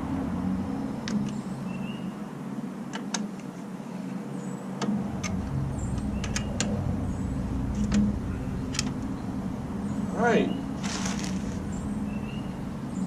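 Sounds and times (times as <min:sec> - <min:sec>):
steady low rumble: 0:04.9 - 0:13.0.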